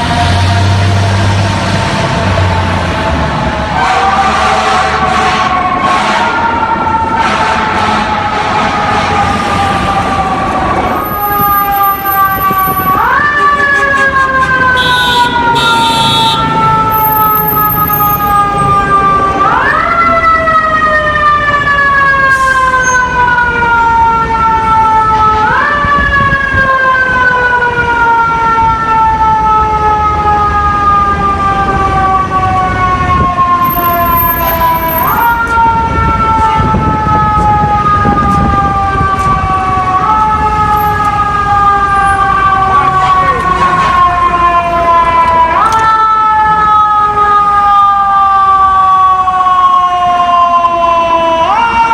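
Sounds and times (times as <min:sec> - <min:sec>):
engine and traffic rumble: 0:00.0 - 0:51.9
mechanical siren: 0:03.4 - 0:51.9.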